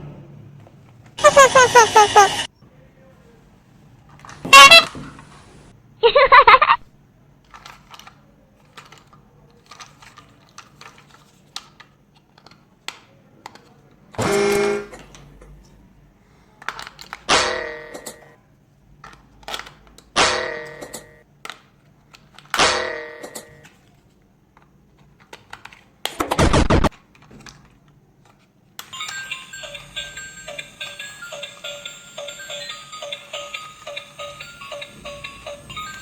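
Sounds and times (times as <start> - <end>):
short loud pitched sounds: 4.5 - 5.0.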